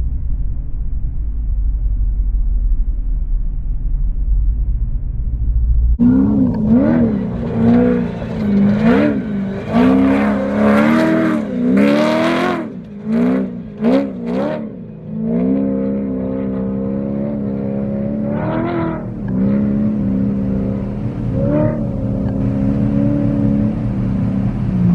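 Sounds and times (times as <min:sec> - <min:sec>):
low rumble: 0:00.0 - 0:24.9
engine revving hard: 0:06.0 - 0:24.9.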